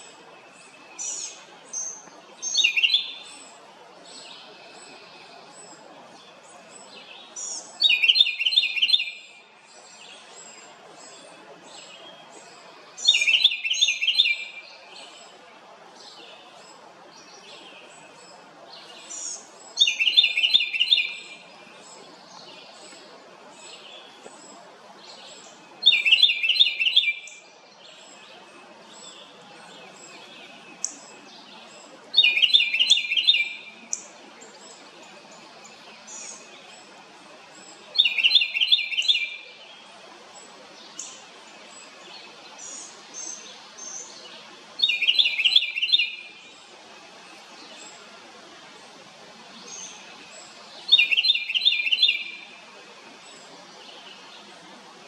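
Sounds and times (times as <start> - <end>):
wren singing rapid notes: 49.7 - 52.6.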